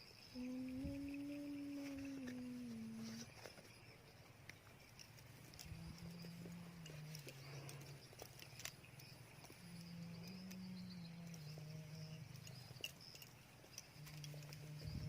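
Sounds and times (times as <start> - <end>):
low steady drone: 0.0 - 3.5
insects chirping: 0.0 - 15.0.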